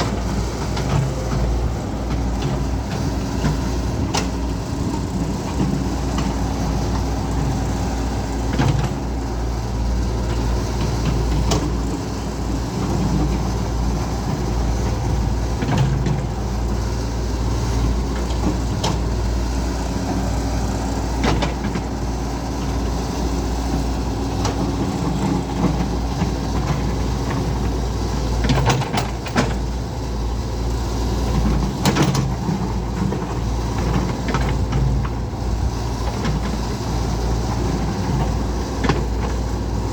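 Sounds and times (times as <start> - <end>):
excavator diesel engine drone: 0.0 - 39.9.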